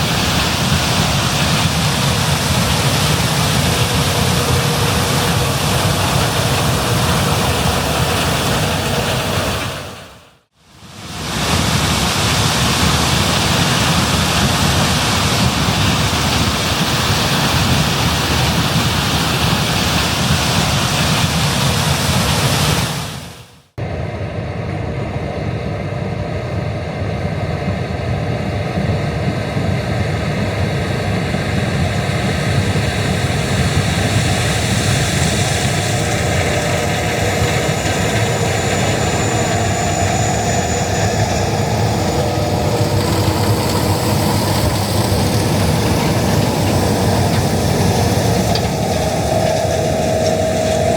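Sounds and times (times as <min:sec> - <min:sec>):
farm machinery mechanical rush: 0:00.0 - 0:10.3, 0:10.9 - 0:23.2, 0:27.4 - 0:50.9
engine droning: 0:00.0 - 0:22.8, 0:23.8 - 0:50.9.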